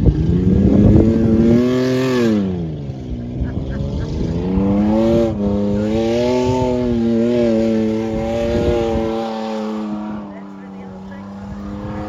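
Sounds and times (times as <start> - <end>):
vehicle engine revving hard: 0.0 - 12.0.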